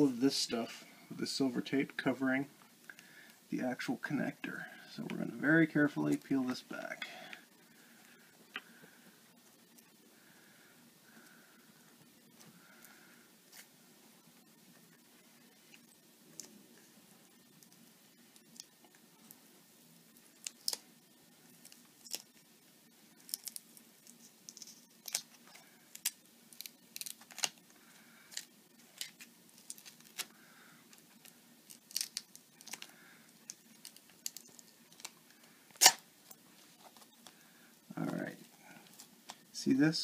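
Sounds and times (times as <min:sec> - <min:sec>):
foil tape peeling crinkles: 0:20.2 - 0:22.4, 0:23.1 - 0:37.3.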